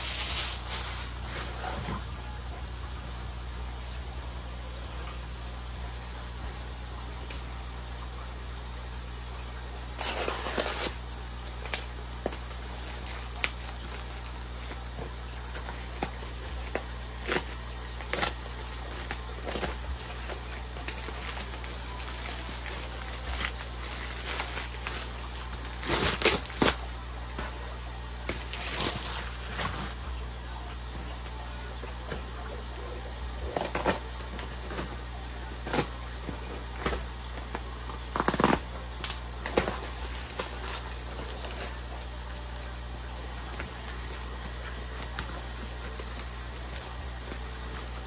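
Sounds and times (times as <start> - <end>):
packaging rustling: 10.0 - 11.0, 11.6 - 27.7, 28.3 - 30.0, 35.6 - 48.0.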